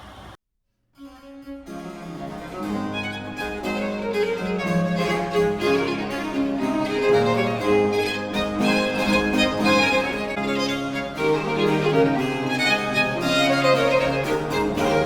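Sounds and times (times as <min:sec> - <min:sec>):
bowed strings with harpsichord: 0:01.2 - 0:15.0.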